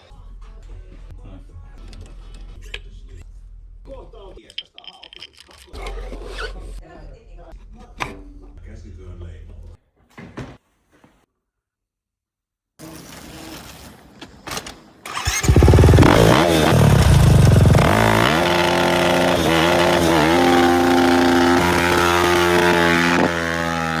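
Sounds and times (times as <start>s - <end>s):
motorcycle engine revving and idling: 15.1s - 24.0s.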